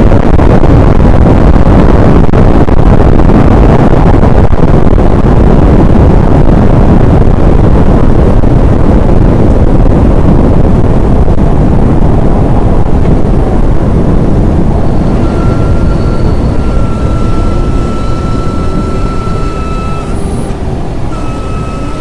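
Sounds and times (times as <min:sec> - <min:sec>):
loud wind on microphone: 0:00.0 - 0:22.0.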